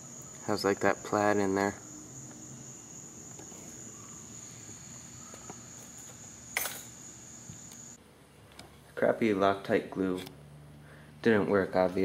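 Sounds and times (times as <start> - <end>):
crickets trilling: 0.0 - 8.0.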